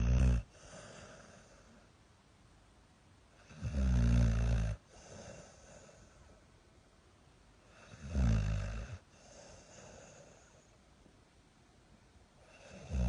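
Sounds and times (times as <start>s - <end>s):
dog snoring loudly: 0.0s - 1.6s, 3.4s - 6.2s, 7.7s - 10.6s, 12.4s - 13.0s
dog breathing quietly: 0.0s - 1.9s, 4.8s - 6.5s, 9.0s - 10.8s.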